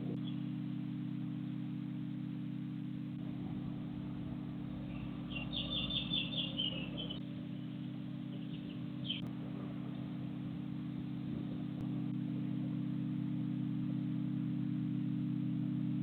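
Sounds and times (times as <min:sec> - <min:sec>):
steady low hum: 0:00.0 - 0:16.0
bird chirp: 0:00.1 - 0:00.5, 0:04.3 - 0:09.3.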